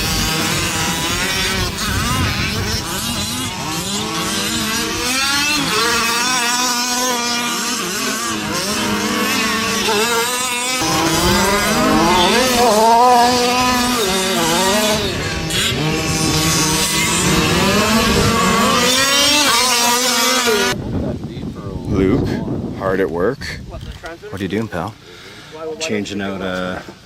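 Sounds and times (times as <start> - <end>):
small engines revving: 0.0 - 20.8.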